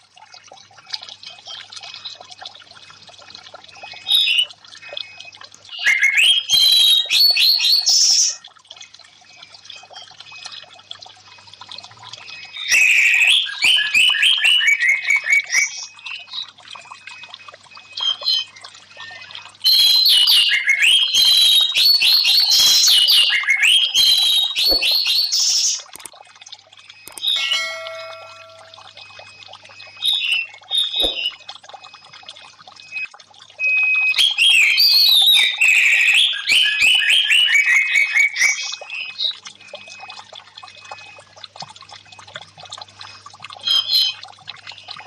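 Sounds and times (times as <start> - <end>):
faint trickle of water: 0.0 - 45.0
bird singing sliding notes: 27.1 - 28.9.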